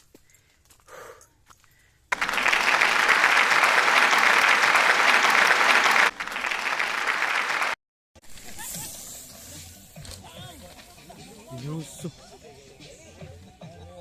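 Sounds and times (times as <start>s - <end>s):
crowd applause: 2.1s - 7.8s.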